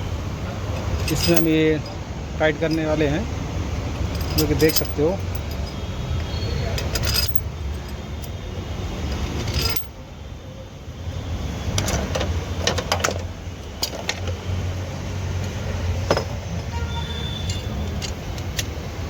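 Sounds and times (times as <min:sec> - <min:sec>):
metal tools clinking: 0:00.9 - 0:03.2, 0:03.9 - 0:08.4, 0:09.1 - 0:10.0, 0:17.2 - 0:18.7.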